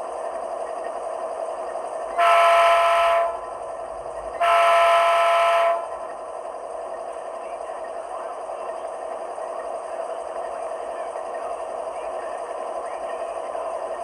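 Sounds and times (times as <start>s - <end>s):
diesel engine running sound: 0.0s - 14.0s
model train horn blasts: 2.2s - 3.6s, 4.4s - 6.0s.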